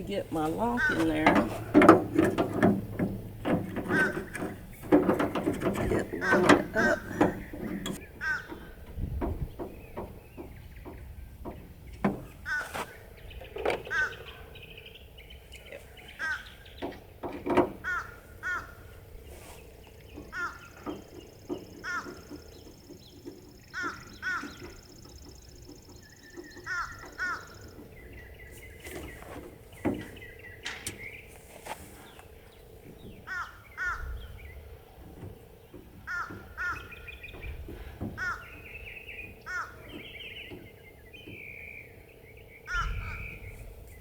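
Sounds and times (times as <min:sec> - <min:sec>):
crows cawing: 0:00.4 - 0:02.6, 0:03.4 - 0:08.8, 0:12.4 - 0:13.0, 0:13.7 - 0:14.7, 0:15.8 - 0:16.8, 0:17.7 - 0:19.6, 0:20.2 - 0:21.0, 0:21.6 - 0:22.6, 0:23.7 - 0:24.9, 0:26.5 - 0:28.0, 0:33.2 - 0:34.3, 0:36.0 - 0:37.2, 0:37.8 - 0:40.4, 0:42.6 - 0:43.4
tailgate latch clicks and knocks: 0:00.8 - 0:12.5, 0:29.0 - 0:31.2.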